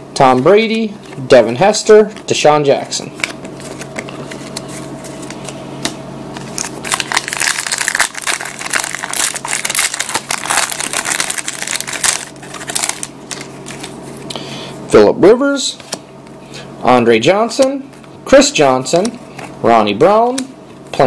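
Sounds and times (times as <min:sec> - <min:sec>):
foil wrapper crinkling: 0:06.4 - 0:14.0.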